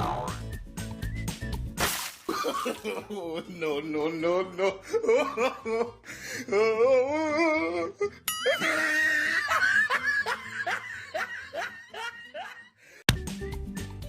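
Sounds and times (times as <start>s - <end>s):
background music: 0.0s - 14.0s
person laughing: 2.3s - 12.7s.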